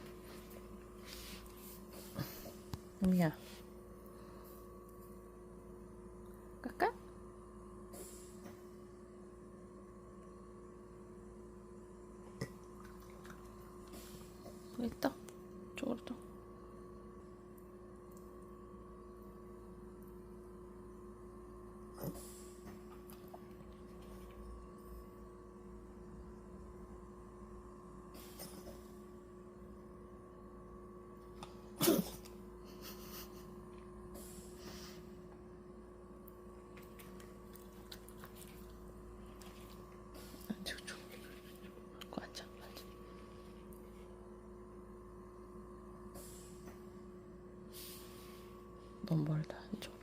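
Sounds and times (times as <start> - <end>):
nebulizer electrical hum: 0.0 - 50.0
small dog sneezing: 31.8 - 32.2
soft hissing breaths: 47.6 - 48.9.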